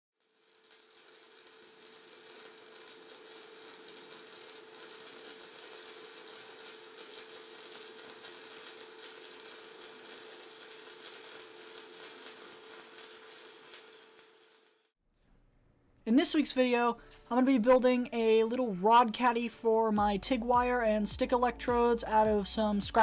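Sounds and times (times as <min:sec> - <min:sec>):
welding arc crackling: 0:00.1 - 0:15.0.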